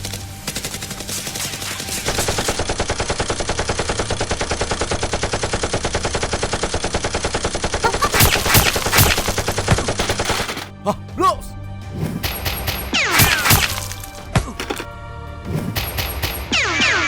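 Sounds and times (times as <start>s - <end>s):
rapid automatic gunfire: 0.0s - 10.7s
loud single gunshots: 13.0s - 14.0s.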